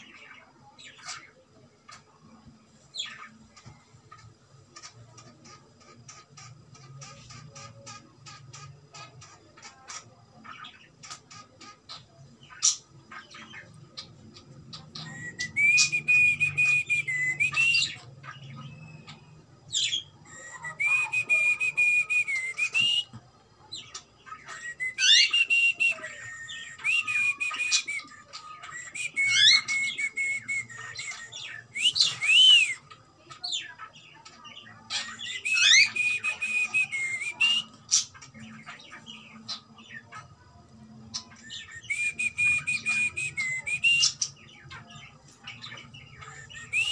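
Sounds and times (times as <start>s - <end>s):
cockatiel whistled calls: 14.7s - 33.0s, 34.9s - 38.6s, 41.1s - 46.9s.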